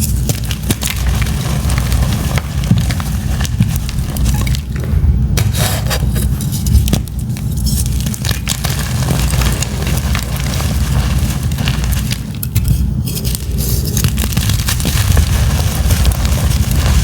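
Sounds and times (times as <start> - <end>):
steady low rumble: 0.0 - 17.0
chalk crunching: 5.4 - 17.0.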